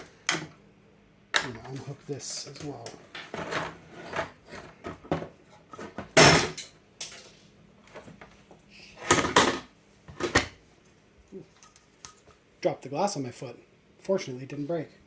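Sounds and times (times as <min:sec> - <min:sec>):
loud clatter of dropped glass: 0:06.2 - 0:07.2.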